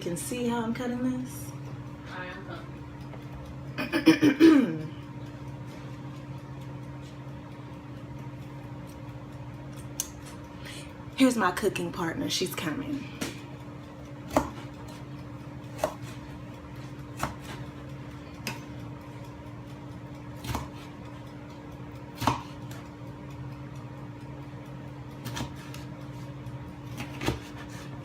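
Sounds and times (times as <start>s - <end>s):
steady low hum: 0.0s - 28.0s
knife chopping on cutting board: 14.3s - 15.0s, 15.7s - 16.3s, 17.1s - 17.7s, 20.4s - 21.0s, 22.2s - 22.8s, 25.2s - 25.8s, 26.9s - 27.8s.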